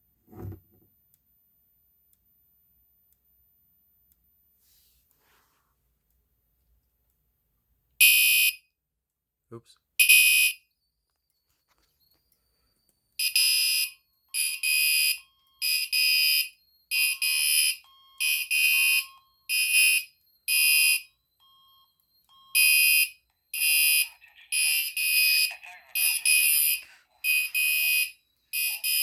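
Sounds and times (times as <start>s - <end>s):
fire alarm horn beeps: 8.0s - 8.7s, 10.0s - 10.7s, 13.2s - 24.1s, 26.1s - 29.0s.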